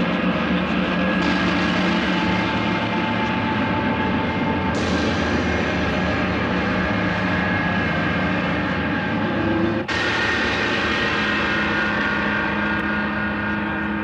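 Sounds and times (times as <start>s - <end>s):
dense mechanical drone: 0.0s - 14.0s.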